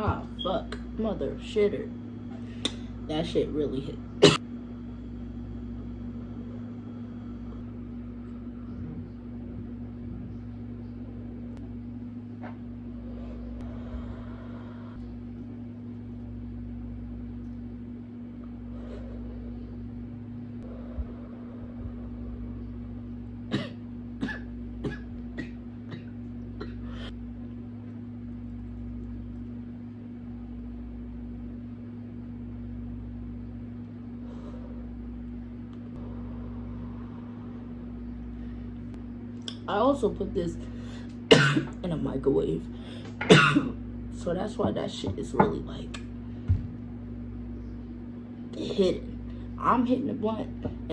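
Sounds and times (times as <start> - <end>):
steady low hum: 0.0 - 50.9.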